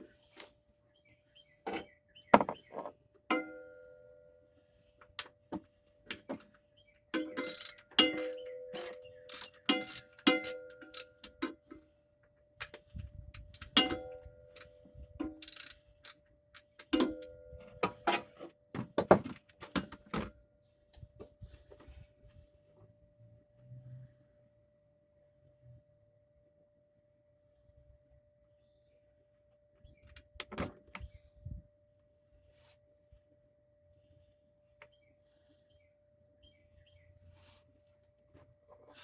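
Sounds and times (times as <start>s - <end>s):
metallic clinks: 7.2s - 11.6s, 13.4s - 17.7s
ratcheting socket wrench clicking: 7.2s - 11.6s, 13.4s - 17.4s.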